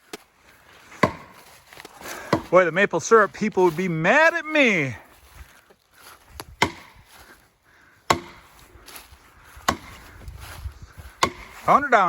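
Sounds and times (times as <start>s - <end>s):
tool striking tree trunk: 0.9s - 2.6s, 6.4s - 7.2s, 8.1s - 8.7s, 9.6s - 10.2s, 11.1s - 11.8s.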